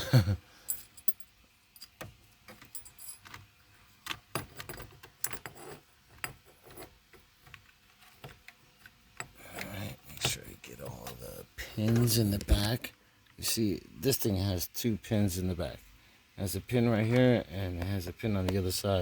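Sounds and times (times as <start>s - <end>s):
metal parts clicking and rattling: 0.6s - 10.4s.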